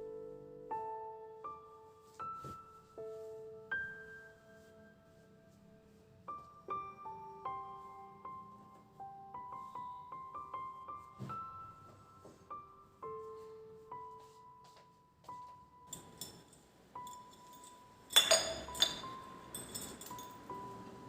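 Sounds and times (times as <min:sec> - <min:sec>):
soft slow piano music: 0:00.0 - 0:21.0
hard objects clinking: 0:15.9 - 0:20.5.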